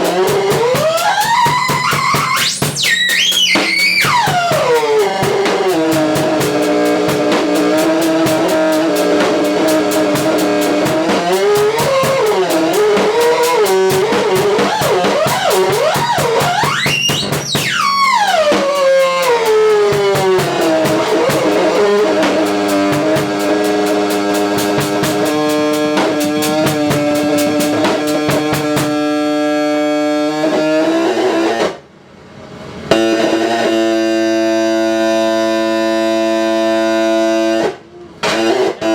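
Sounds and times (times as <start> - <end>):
noise rock jam: 0.0 - 29.7
droning synthesizer tones: 0.0 - 31.2.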